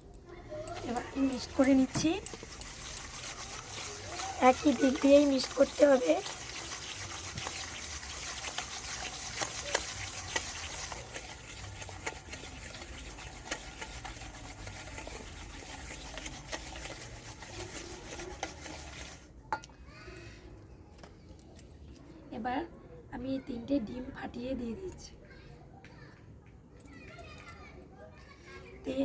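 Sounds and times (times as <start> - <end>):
sugar and oil stirred in a bowl: 0.0 - 19.4.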